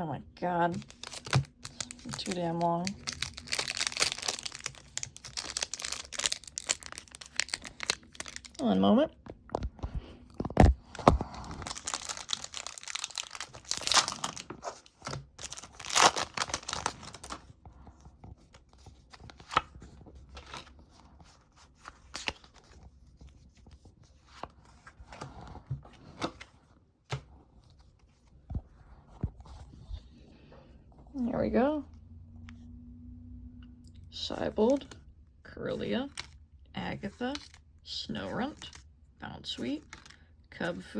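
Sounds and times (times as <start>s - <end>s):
foil wrapper tearing and crinkling: 0.8s - 8.6s, 10.9s - 17.4s.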